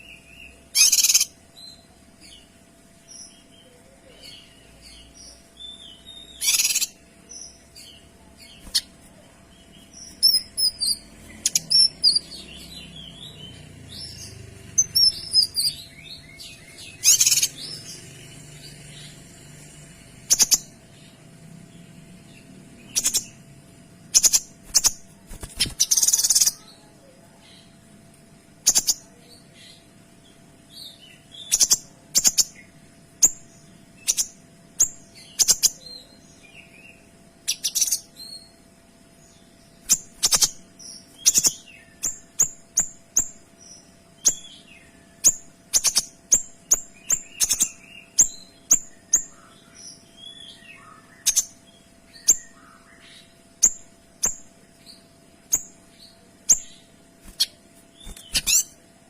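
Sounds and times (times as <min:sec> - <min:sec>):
faint steady hum: 0:00.0 - 0:59.0
songbird sharp high calls: 0:00.8 - 0:01.3, 0:06.3 - 0:07.0, 0:56.5 - 0:58.8.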